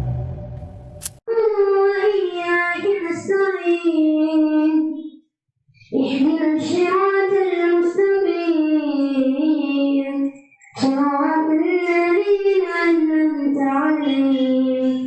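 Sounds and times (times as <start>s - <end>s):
child singing: 1.3s - 5.2s, 5.9s - 15.0s.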